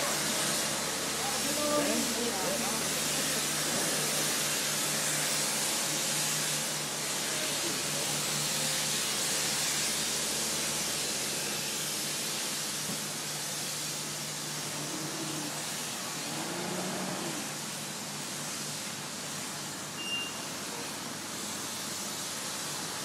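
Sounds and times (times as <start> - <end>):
steady hiss: 0.0 - 23.0.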